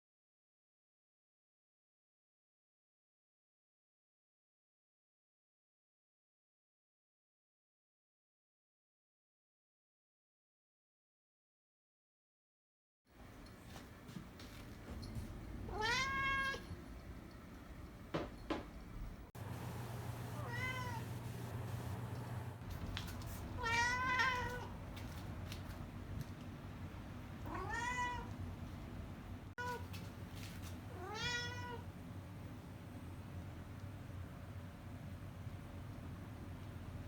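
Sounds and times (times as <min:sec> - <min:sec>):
cat meowing: 0:15.7 - 0:16.7, 0:20.3 - 0:21.2, 0:23.4 - 0:24.8, 0:27.4 - 0:28.4, 0:29.6 - 0:29.9, 0:30.9 - 0:31.9.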